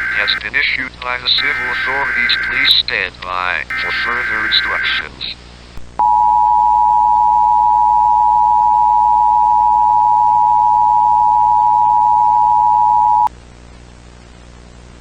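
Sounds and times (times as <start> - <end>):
two-tone alert signal: 0.0 - 0.4, 1.4 - 2.8, 3.7 - 5.0.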